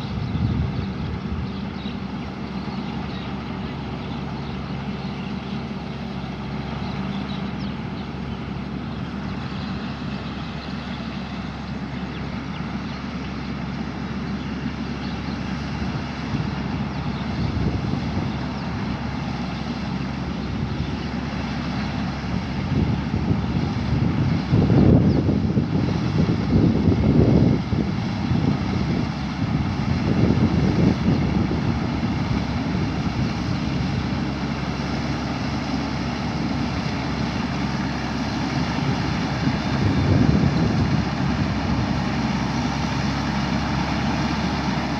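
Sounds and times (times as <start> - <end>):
wind buffeting microphone: 0.0 - 5.1, 15.2 - 44.9
diesel engine running: 0.0 - 44.9.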